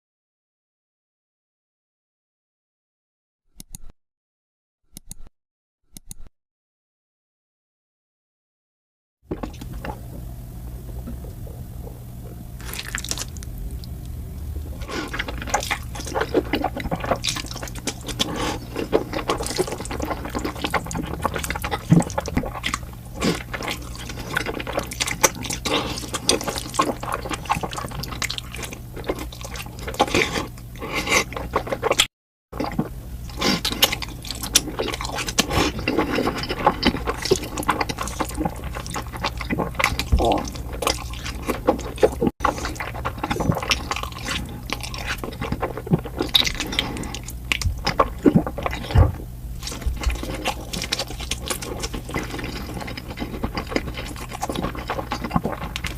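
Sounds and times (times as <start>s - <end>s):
steady low hum: 9.3s - 55.9s
person chewing: 10.8s - 55.9s
wet mouth sounds: 11.0s - 14.0s, 14.8s - 55.9s.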